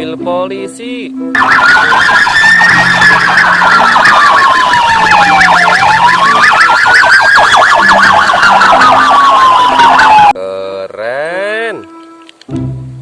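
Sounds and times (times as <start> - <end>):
police siren wailing: 1.4 - 10.4
police siren yelp: 1.4 - 10.4.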